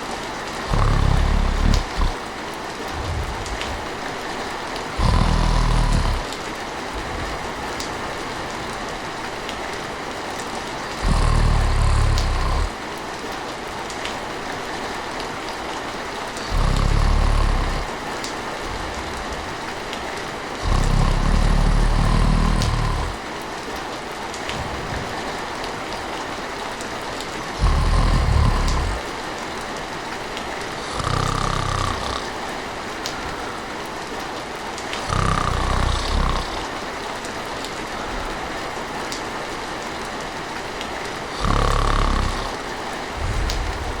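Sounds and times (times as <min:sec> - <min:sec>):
person snoring: 0:00.0 - 0:08.2, 0:10.9 - 0:12.8, 0:16.4 - 0:19.8, 0:20.6 - 0:23.3, 0:27.5 - 0:29.2, 0:30.8 - 0:32.5, 0:35.0 - 0:36.8, 0:41.3 - 0:44.0
steady rain falling: 0:00.0 - 0:44.0.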